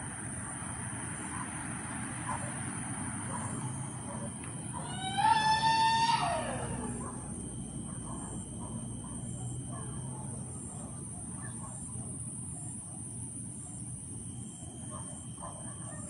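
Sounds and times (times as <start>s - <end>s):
faint distant calls: 0.0s - 16.0s
wailing scream: 4.8s - 7.4s.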